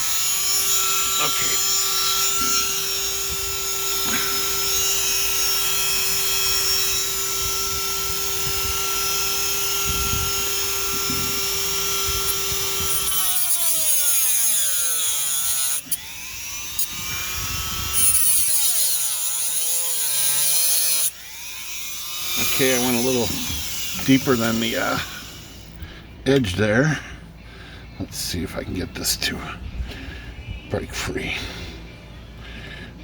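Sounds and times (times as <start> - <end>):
rotary tool grinding screw: 0.0 - 25.8.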